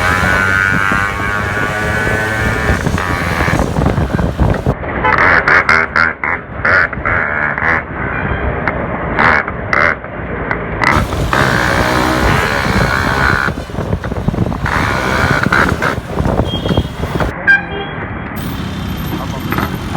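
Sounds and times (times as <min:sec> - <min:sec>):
motorcycle engine revving: 0:00.0 - 0:04.8, 0:10.9 - 0:17.3.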